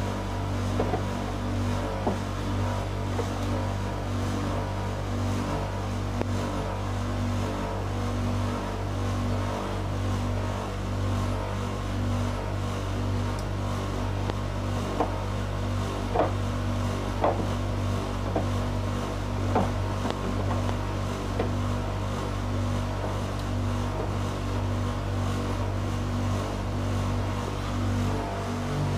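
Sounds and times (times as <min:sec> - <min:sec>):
washing machine motor hum: 0:00.0 - 0:28.9
load knocking in drum: 0:17.2 - 0:17.6.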